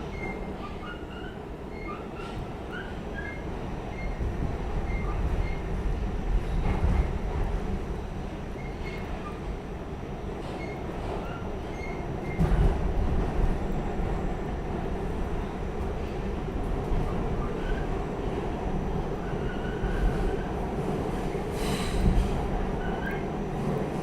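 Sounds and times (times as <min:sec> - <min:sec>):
subway wheels rumbling on track: 0:00.0 - 0:24.0
subway car jolts: 0:10.4 - 0:24.0.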